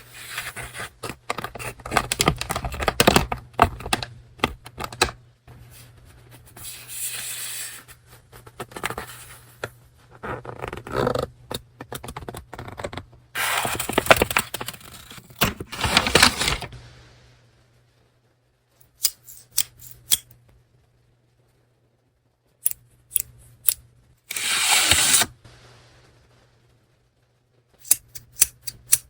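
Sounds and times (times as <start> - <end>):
paper rustling and crinkling: 12.9 - 16.7.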